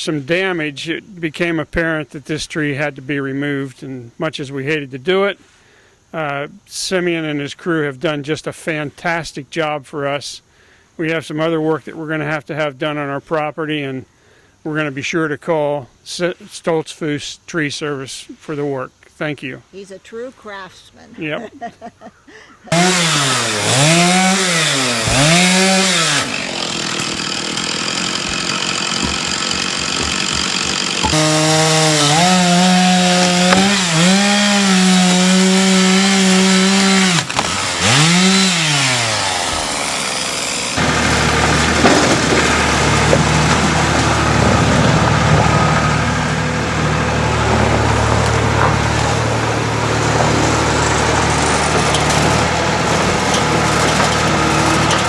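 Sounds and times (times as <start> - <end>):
chainsaw engine revving: 22.7 - 55.0
deeper steady engine: 40.6 - 55.0.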